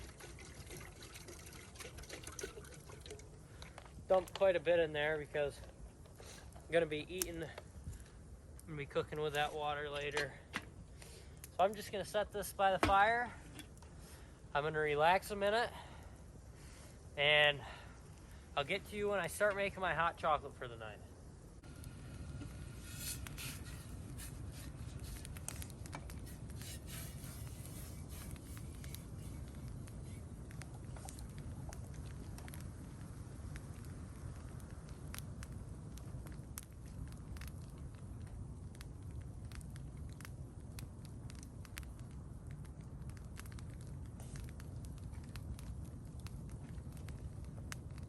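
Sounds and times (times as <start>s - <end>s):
campfire crackling: 0.0s - 48.0s
low steady rumble: 0.0s - 48.0s.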